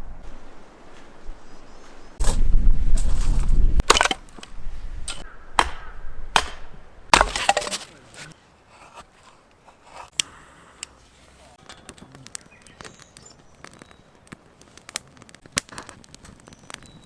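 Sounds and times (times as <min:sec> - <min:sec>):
firewood cracking and snapping: 0:02.2 - 0:04.6, 0:07.1 - 0:08.0, 0:11.6 - 0:17.0.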